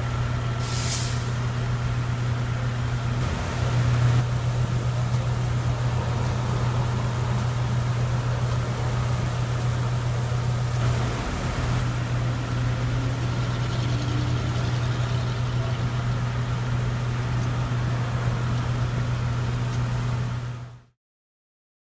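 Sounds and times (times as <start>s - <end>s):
hiss: 0.6s - 1.4s
machine engine humming: 1.4s - 20.9s.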